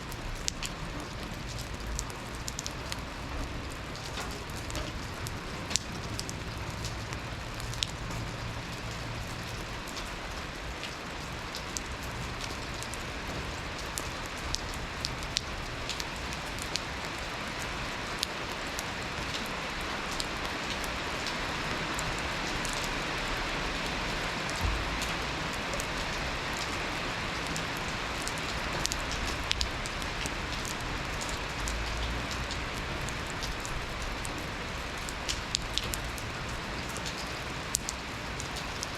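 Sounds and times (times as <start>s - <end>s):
raindrops tapping: 0.0s - 38.9s
steady rain hiss: 0.0s - 38.9s.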